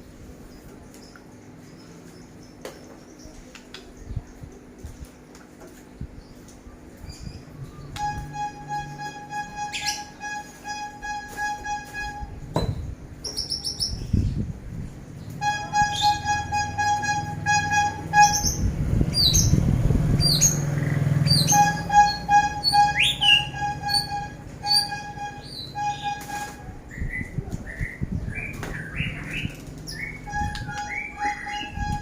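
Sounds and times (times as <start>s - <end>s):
bird chirps and calls: 12.6s - 14.5s, 18.1s - 32.0s
low rumbling noise: 13.9s - 32.0s.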